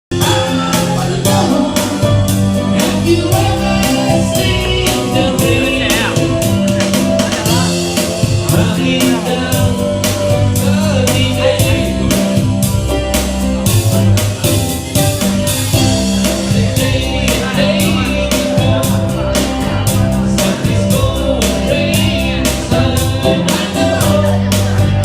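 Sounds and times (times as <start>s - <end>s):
rock band playing: 0.1s - 25.0s
person singing: 0.2s - 12.6s
drum beat: 2.8s - 9.2s.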